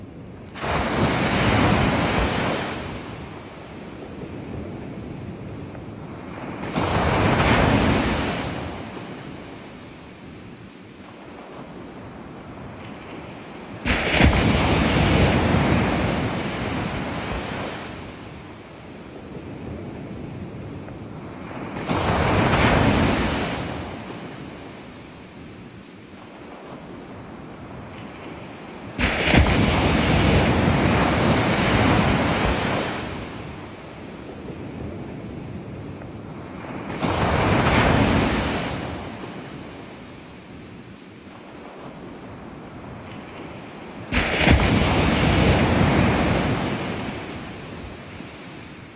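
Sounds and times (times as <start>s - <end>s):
ocean waves breaking: 41.7s - 48.9s.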